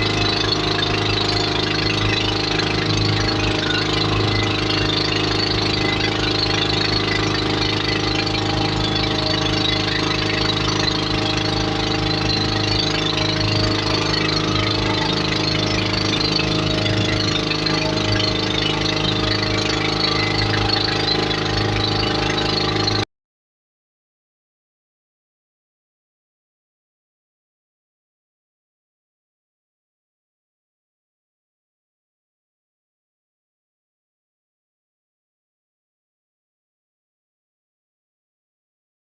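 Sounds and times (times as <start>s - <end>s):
motorboat engine running: 0.0s - 23.1s.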